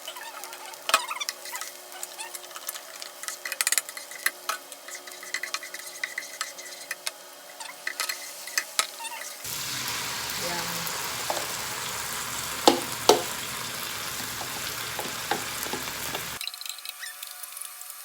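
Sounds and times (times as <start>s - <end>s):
food sizzling in oil: 7.4s - 18.0s
utensil scraping a pan: 9.5s - 16.4s.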